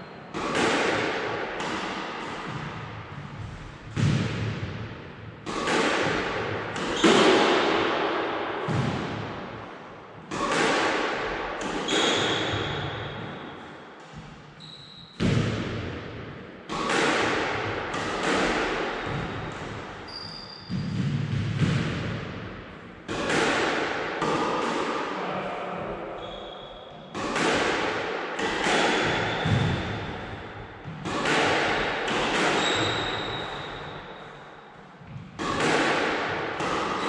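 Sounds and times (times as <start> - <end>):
squash ball racket strikes: 0.2 - 25.2, 26.2 - 37.0
squash ball hitting wall: 0.3 - 14.4, 15.1 - 25.1, 27.0 - 37.0
shoes squeaking on court floor: 11.8 - 15.2, 20.0 - 21.1, 26.2 - 27.1, 32.6 - 34.4.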